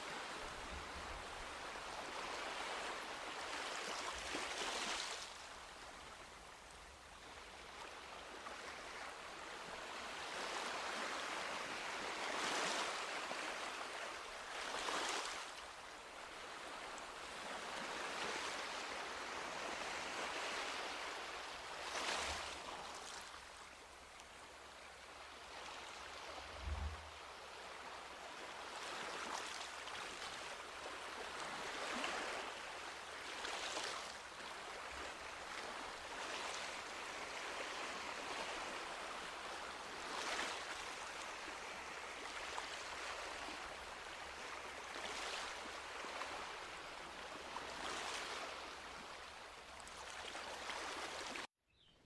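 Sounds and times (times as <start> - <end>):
small waves breaking on beach: 0.0 - 6.4, 7.2 - 51.5
brief low thump: 26.5 - 27.1.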